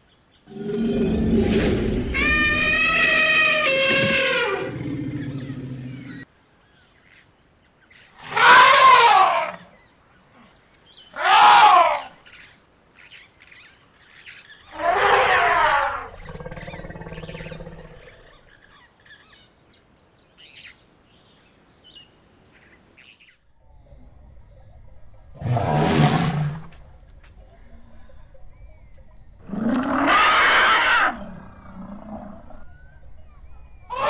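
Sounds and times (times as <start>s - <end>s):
elephants trumpeting: 0.5s - 6.2s, 8.3s - 9.5s, 25.4s - 27.0s, 29.4s - 32.4s.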